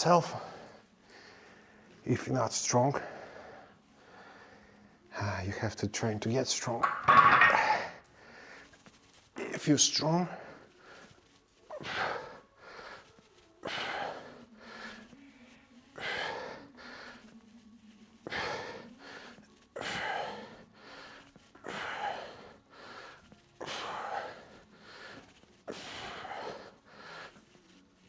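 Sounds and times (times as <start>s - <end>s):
man breathing hard: 10.4s - 15.2s, 16.0s - 17.3s, 18.2s - 27.6s.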